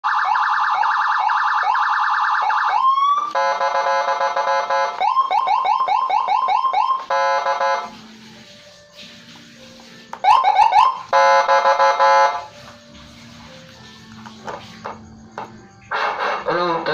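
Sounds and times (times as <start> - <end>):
electronic siren cycling tones: 0.0 - 8.2, 10.2 - 12.5.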